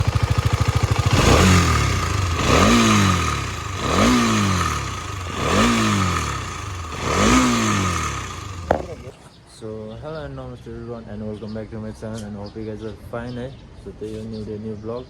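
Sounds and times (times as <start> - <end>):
motorcycle engine revving: 0.0 - 9.3.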